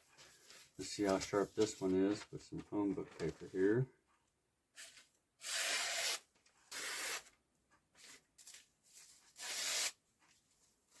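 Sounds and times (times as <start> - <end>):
paper rustling: 0.0 - 3.8.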